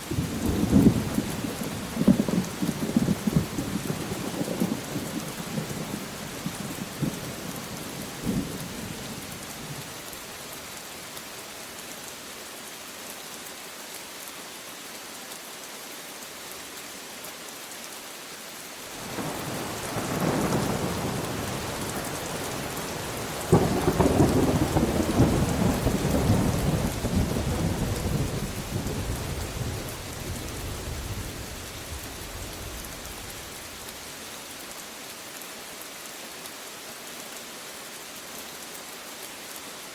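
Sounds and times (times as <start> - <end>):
steady rain: 0.0 - 39.9
thunder rumbling: 0.1 - 6.0, 19.0 - 33.6.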